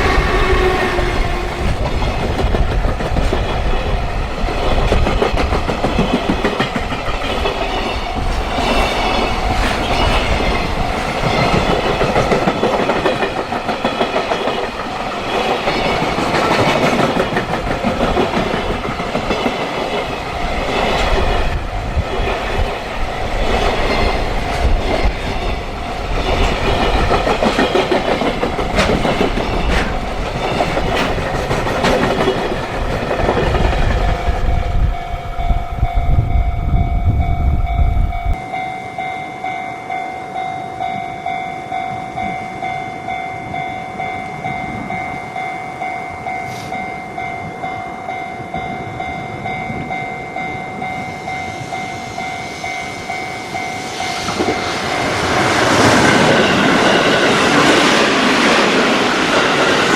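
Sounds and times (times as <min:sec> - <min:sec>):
train wheels clattering: 0:00.0 - 0:34.5, 0:51.1 - 0:59.9
crossing warning bell: 0:00.0 - 0:59.9.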